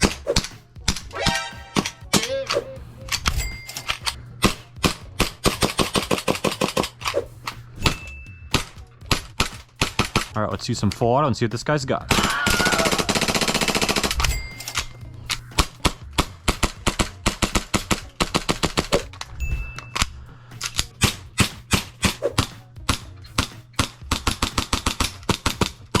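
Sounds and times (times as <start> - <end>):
airsoft pistol firing: 7.8 - 10.3
steady low hum: 13.0 - 25.9.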